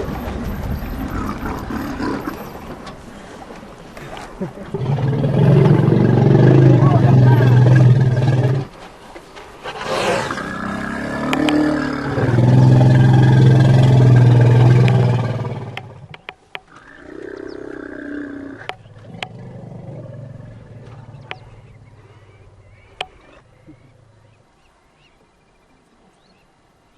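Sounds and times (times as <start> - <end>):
elephant calling: 4.6 - 8.7.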